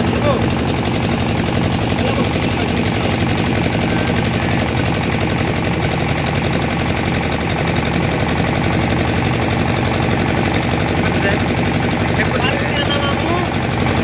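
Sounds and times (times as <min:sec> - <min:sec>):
engine chugging: 0:00.0 - 0:14.0.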